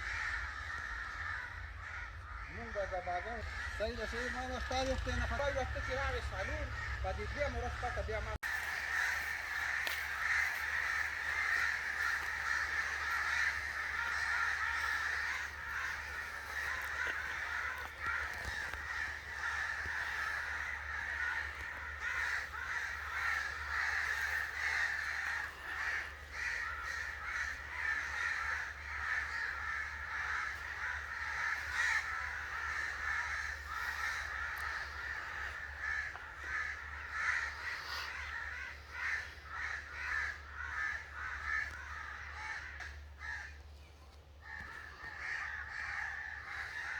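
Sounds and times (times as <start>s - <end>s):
crows cawing: 0.0s - 46.9s.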